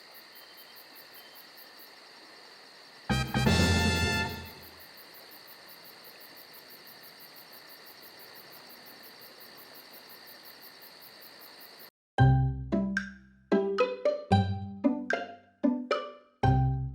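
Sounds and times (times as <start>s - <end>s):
insect chirring: 0.0s - 3.1s, 4.5s - 11.9s
music jingle: 3.1s - 4.6s, 12.2s - 16.9s.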